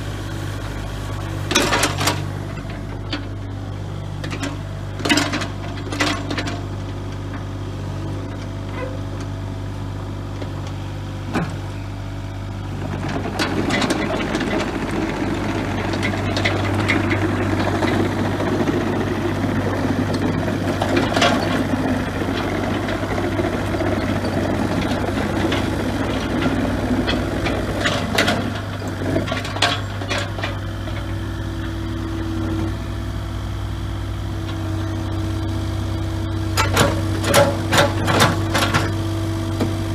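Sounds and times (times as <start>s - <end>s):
excavator diesel engine running: 0.0s - 39.9s
metal clanks and knocks: 29.2s - 31.1s, 36.6s - 39.0s.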